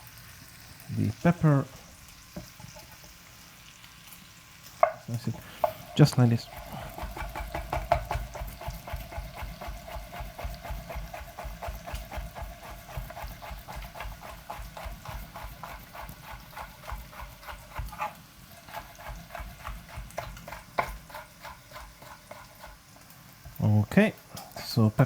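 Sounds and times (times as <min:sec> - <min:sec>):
knife slicing peppers: 0:05.0 - 0:22.9.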